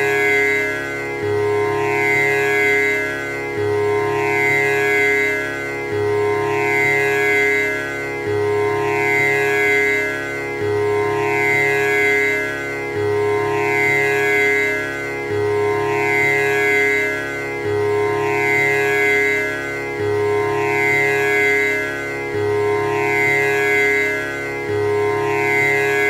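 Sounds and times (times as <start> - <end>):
tanpura drone: 0.0 - 26.0.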